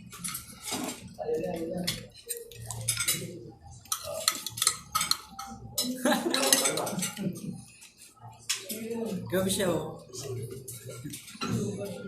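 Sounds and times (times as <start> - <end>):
cutlery clinking on a plate: 0.1 - 7.6.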